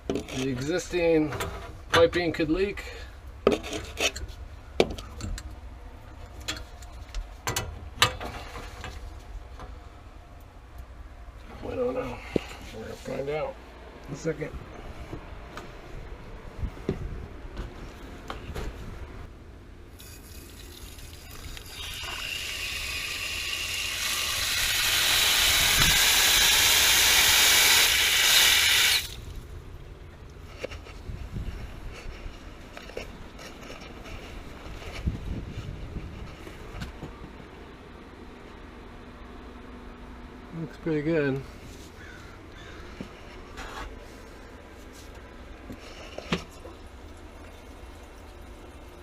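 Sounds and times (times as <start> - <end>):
low steady hum: 0.0 - 49.0
water hissing through pipes: 19.9 - 29.3.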